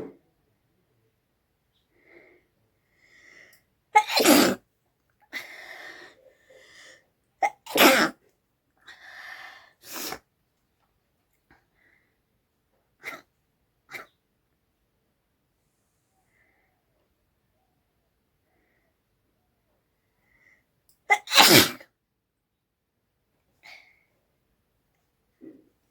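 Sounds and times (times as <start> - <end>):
person sneezing hard: 4.0 - 4.6, 7.4 - 8.2, 9.9 - 10.2, 21.1 - 21.8.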